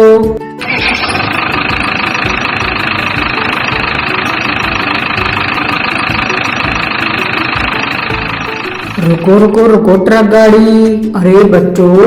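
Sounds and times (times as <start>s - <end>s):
toy truck engine chattering: 0.6s - 9.5s.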